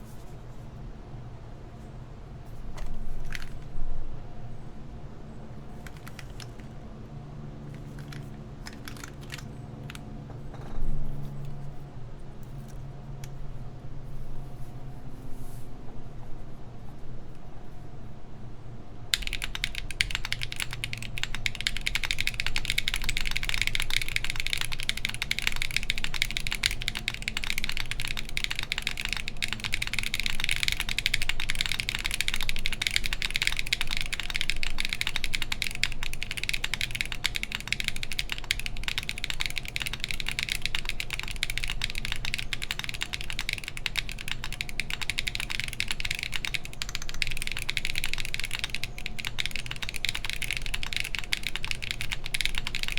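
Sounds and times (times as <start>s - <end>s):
fast typing on mechanical keyboard: 2.8s - 3.7s, 5.7s - 6.8s, 7.6s - 10.2s, 19.1s - 52.9s.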